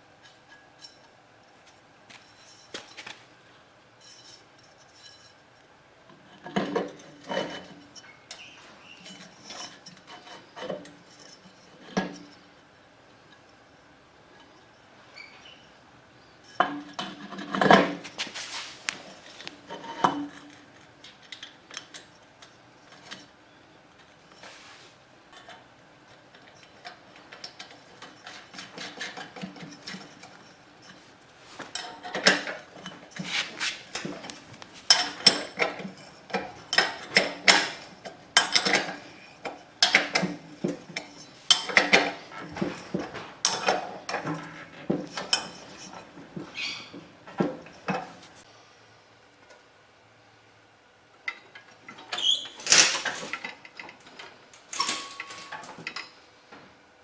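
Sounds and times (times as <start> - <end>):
metal tools clinking: 31.7 - 48.3, 51.9 - 56.2.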